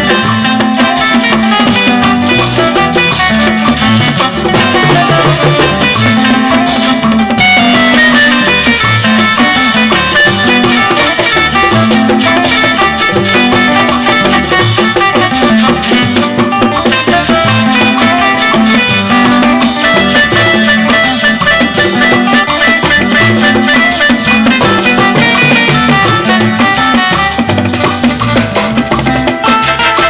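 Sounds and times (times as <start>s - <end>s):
drums: 0.0s - 30.0s
live band playing dance music: 0.0s - 30.0s
walking bass line: 0.0s - 30.0s.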